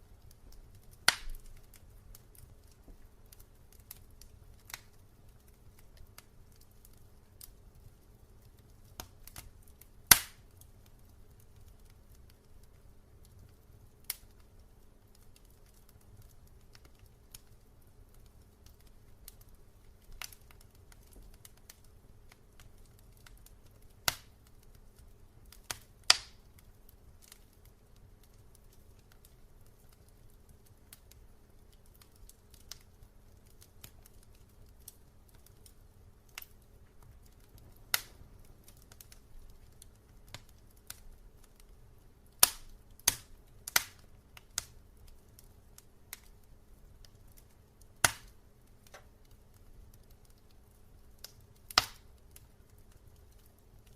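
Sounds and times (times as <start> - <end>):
low rumble of flames: 0.0 - 53.9
wood fire crackling and popping: 0.0 - 53.9
loud snaps of burning wood: 0.1 - 53.9.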